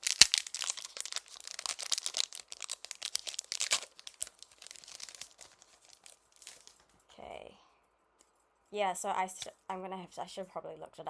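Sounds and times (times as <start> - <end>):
foil wrapper crinkling and tearing: 0.0 - 6.8.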